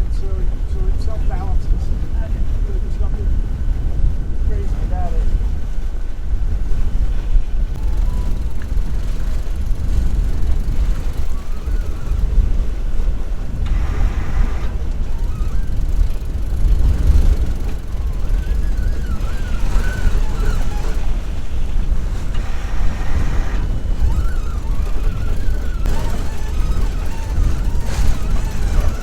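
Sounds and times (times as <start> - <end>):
wind buffeting microphone: 0.0 - 29.0
faint wavering high tone: 7.8 - 12.7.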